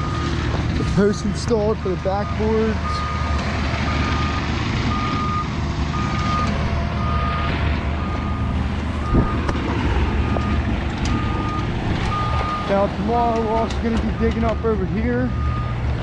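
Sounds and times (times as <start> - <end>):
low engine rumble: 0.0 - 16.0
backup alarm beeping: 3.9 - 9.5.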